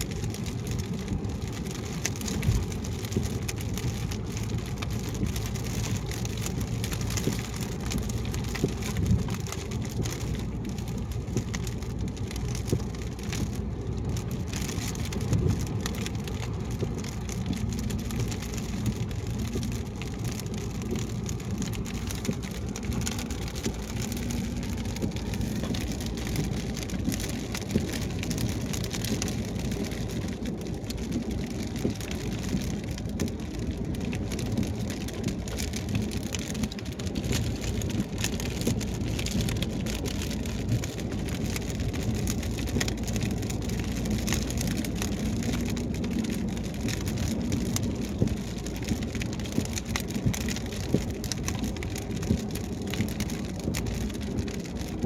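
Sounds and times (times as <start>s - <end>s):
rain on a car: 0.0s - 55.0s
road and tyre rumble: 0.0s - 55.0s.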